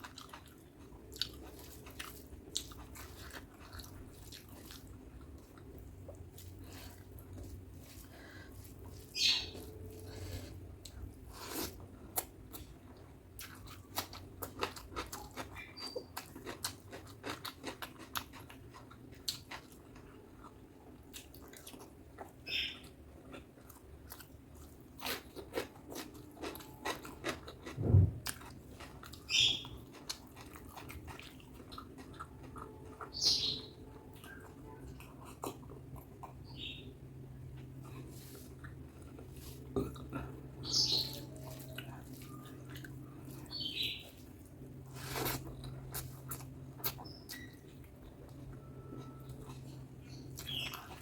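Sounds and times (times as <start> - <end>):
chewing with wet mouth clicks: 0.0 - 10.1, 10.8 - 36.7, 37.5 - 51.0
dull thump: 27.8 - 28.2.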